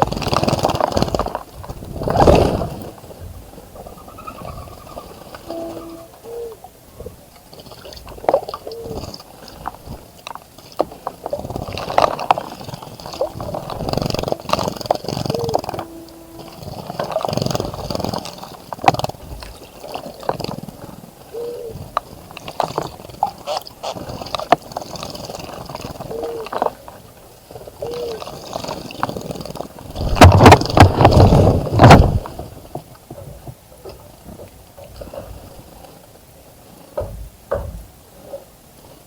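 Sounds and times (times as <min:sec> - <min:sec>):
water splashing: 0:00.0 - 0:37.5
short low bird call: 0:05.5 - 0:06.6.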